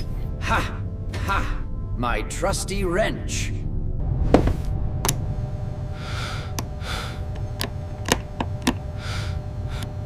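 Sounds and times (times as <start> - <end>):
steady low hum: 3.6 - 10.0
breathy huffs of effort: 8.9 - 10.0.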